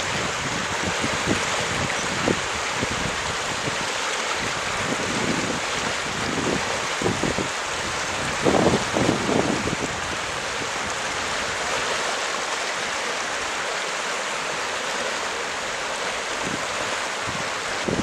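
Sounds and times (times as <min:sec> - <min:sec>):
wind buffeting microphone: 0:00.0 - 0:11.8, 0:16.3 - 0:18.0.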